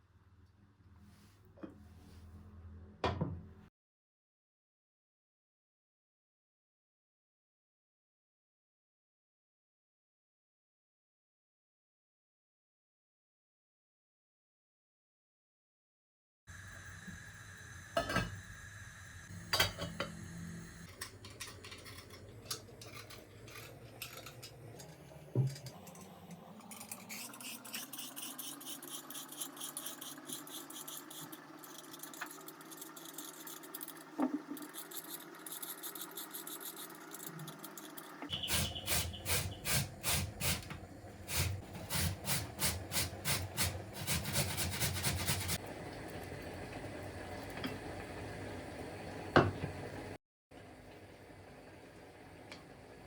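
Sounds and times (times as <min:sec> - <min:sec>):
regular scraping strokes: 0:27.1 - 0:39.0.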